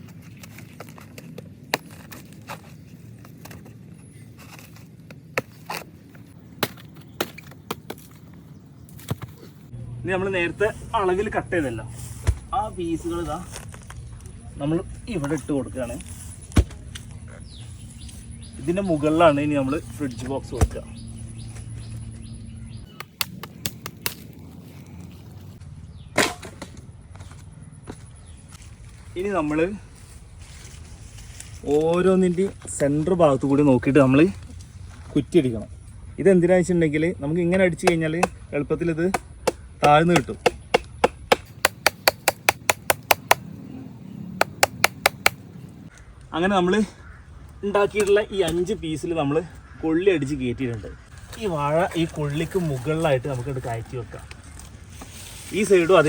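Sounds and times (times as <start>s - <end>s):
faint outdoor background: 0.0s - 56.0s
blade chopping plant stem: 22.9s - 24.4s, 39.1s - 43.5s, 44.4s - 45.4s
sharp knocks: 39.1s - 43.5s, 44.4s - 45.4s.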